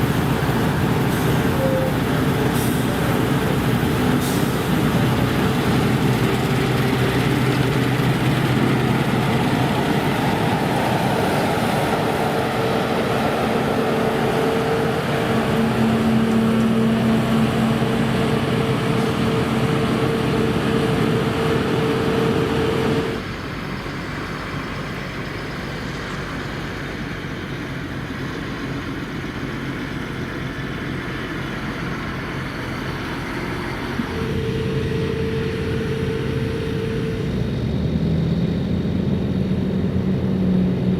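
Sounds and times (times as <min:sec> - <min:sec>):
machinery whine: 0:00.0 - 0:30.2, 0:31.1 - 0:40.9
combine harvester engine drone: 0:00.0 - 0:40.9.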